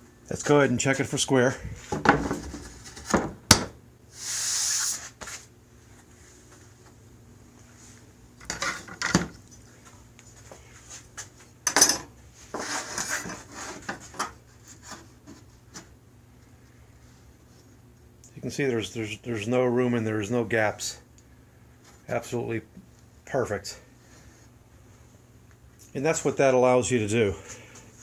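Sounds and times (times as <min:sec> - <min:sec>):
tool knocks and clatter: 0:01.9 - 0:03.7.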